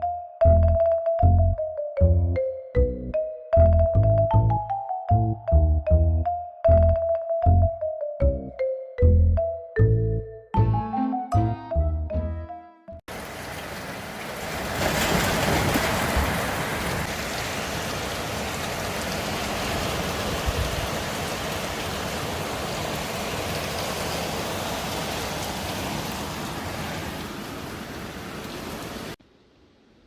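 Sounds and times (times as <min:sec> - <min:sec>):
rain: 0:13.1 - 0:30.0
strong wind: 0:14.7 - 0:29.1.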